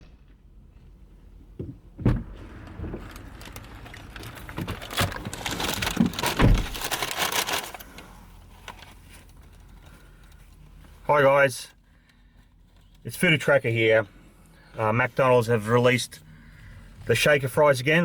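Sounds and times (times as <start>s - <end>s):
rustling and clattering: 0.0s - 7.8s.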